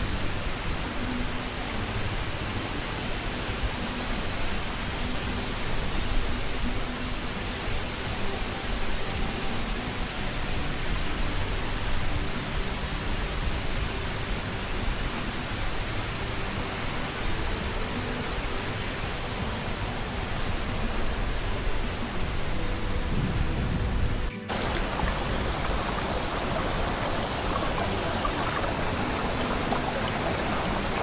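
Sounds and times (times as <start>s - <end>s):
waterfall rushing: 0.0s - 31.0s.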